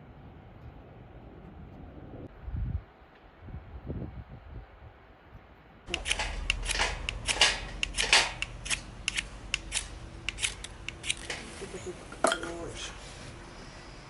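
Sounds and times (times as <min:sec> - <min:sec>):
sharp clicks and crackles: 0:05.9 - 0:11.5.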